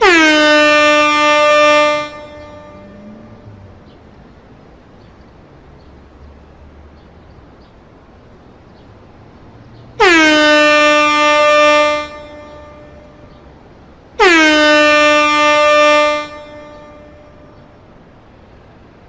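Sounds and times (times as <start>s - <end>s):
air horn blast: 0.0s - 3.7s, 10.0s - 13.3s, 14.2s - 17.6s
faint background noise: 0.0s - 19.0s.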